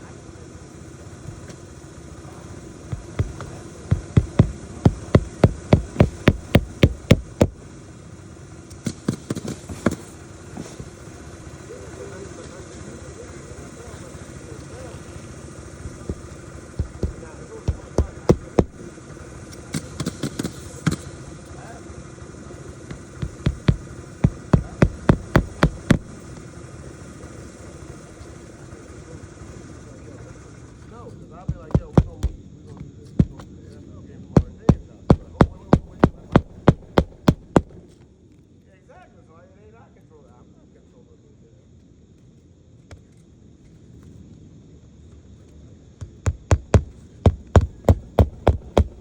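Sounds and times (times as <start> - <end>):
light hammer taps: 2.9 - 7.6, 16.1 - 18.9, 22.9 - 26.1, 31.5 - 32.4, 34.4 - 37.8, 46.0 - 49.0
hammer striking roofing nails: 2.9 - 7.7, 15.9 - 19.0, 22.9 - 26.3, 31.5 - 32.5, 33.2 - 33.5, 34.4 - 37.8, 46.0 - 49.0.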